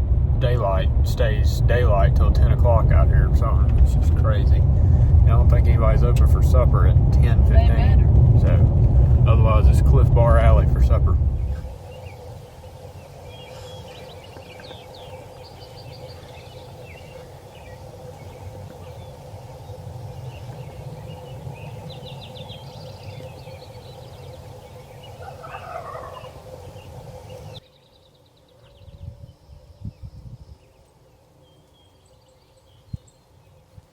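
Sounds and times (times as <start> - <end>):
songbirds chirping: 0.0 - 33.9
background hiss: 9.2 - 33.9
turkey gobbling: 25.1 - 26.9.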